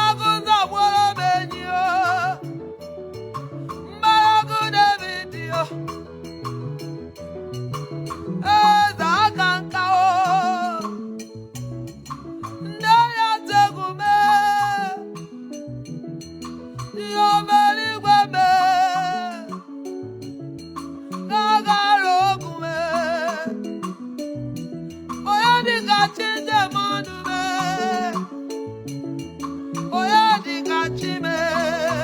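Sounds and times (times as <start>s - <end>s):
person singing: 0.0s - 2.5s, 8.4s - 11.0s, 17.0s - 19.6s, 21.3s - 23.7s, 25.4s - 28.4s, 29.9s - 32.0s
gospel band accompaniment: 16.4s - 19.9s, 25.0s - 32.0s.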